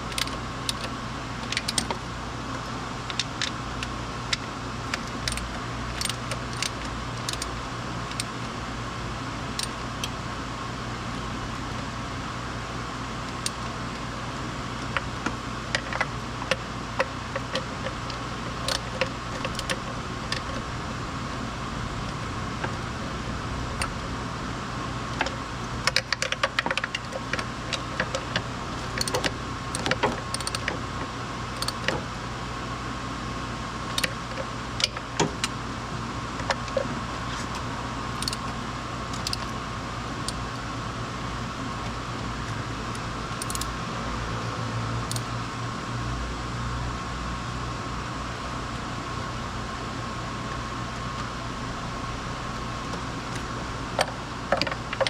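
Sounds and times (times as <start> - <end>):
metallic clicks of hand tools: 0.0 - 2.0, 3.1 - 7.5, 9.6 - 10.2, 15.7 - 20.6, 25.2 - 30.8, 31.6 - 32.0, 38.2 - 38.5, 39.1 - 39.5, 42.9 - 43.8, 45.1 - 45.3
steady background hum: 0.0 - 55.0.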